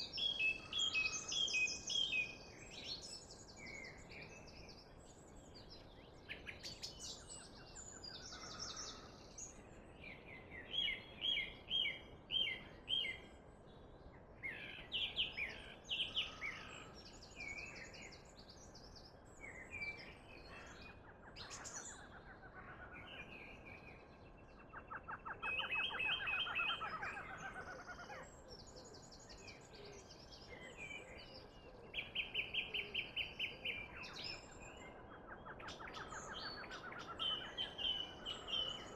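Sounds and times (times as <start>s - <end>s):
birds singing and trilling: 0.0s - 13.3s, 14.3s - 38.9s.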